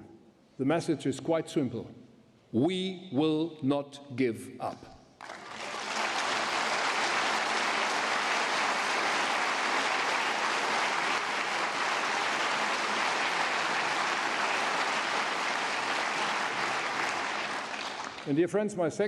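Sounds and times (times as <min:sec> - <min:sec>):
audience applauding: 0:05.2 - 0:18.4.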